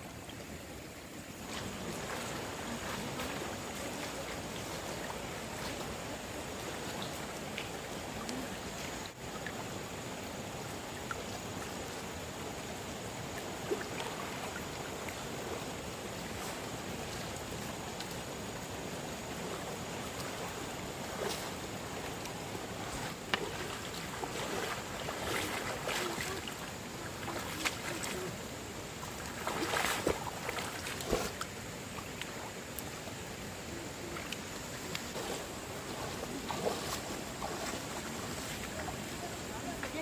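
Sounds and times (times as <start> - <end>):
stream water flowing: 0.0 - 40.0
knocks and splashes: 19.4 - 28.3, 29.0 - 31.6, 34.2 - 39.1.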